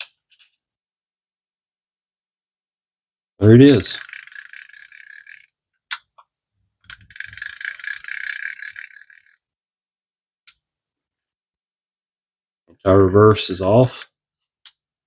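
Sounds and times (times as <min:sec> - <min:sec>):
fishing reel ratchet clicking: 0:03.7 - 0:05.6, 0:06.9 - 0:09.4.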